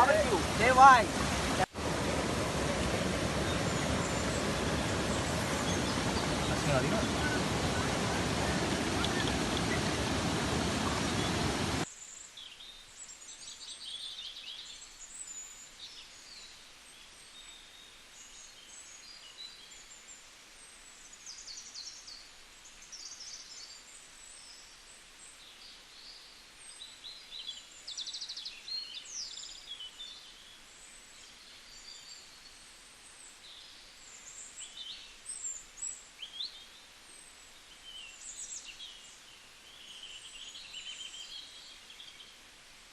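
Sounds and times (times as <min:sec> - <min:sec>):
faint steady rush: 0:00.0 - 0:11.9
birds chirping and trilling: 0:02.0 - 0:11.8.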